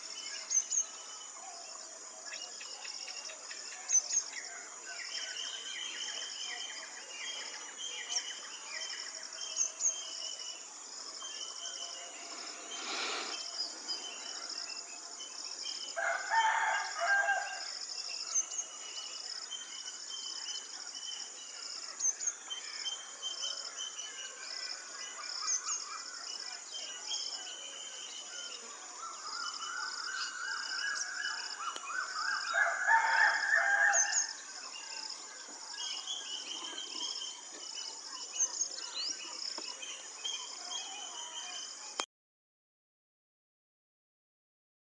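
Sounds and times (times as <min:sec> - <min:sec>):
crickets chirping: 0:00.0 - 0:42.0
rooster crowing: 0:16.0 - 0:17.7, 0:32.2 - 0:34.4.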